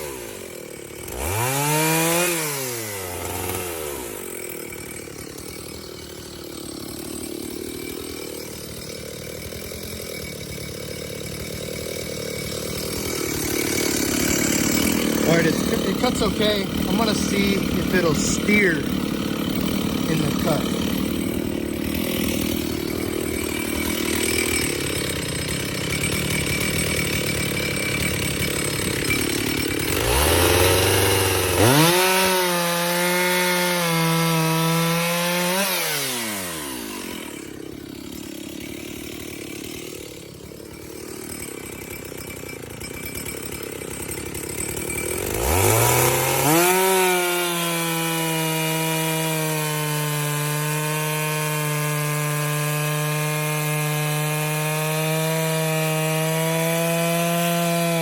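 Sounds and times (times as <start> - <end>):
chainsaw cutting wood: 0.0 - 58.0.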